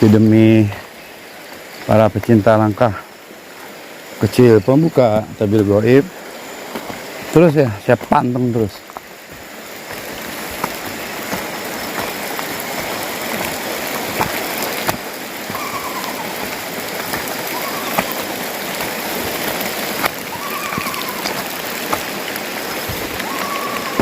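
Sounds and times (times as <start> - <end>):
steady rain falling: 0.0 - 24.0
raindrops ticking: 1.5 - 24.0
faint rising-and-falling calls: 10.1 - 24.0.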